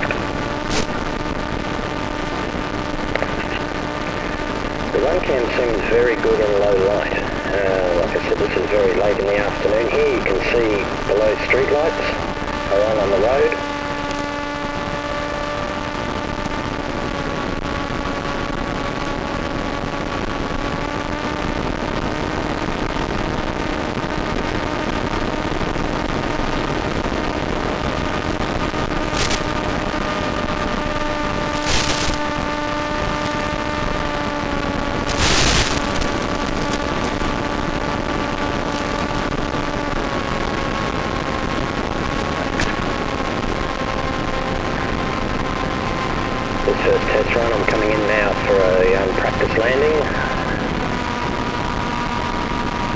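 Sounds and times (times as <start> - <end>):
electric motor and propeller droning: 0.0 - 19.2, 28.0 - 52.9.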